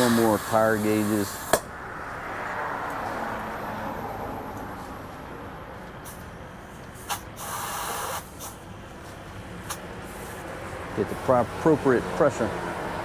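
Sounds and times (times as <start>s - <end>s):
compressed air hissing: 0.0s - 1.6s, 7.0s - 8.7s
tire valve click: 0.0s - 1.7s.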